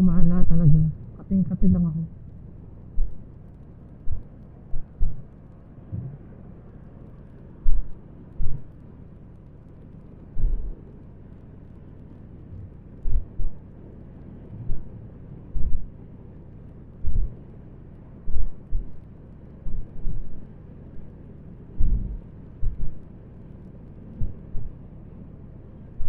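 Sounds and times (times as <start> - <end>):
heavy low thumps of gusts: 2.2 - 6.4, 7.6 - 8.8, 10.3 - 10.8, 12.5 - 13.7, 14.4 - 16.0, 17.0 - 17.4, 18.2 - 23.1, 24.1 - 24.8
wind buffeting microphone: 18.2 - 23.1.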